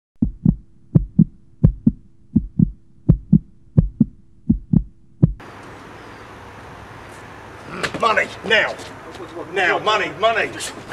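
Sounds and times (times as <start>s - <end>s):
heartbeat thumps: 0.2s - 5.4s.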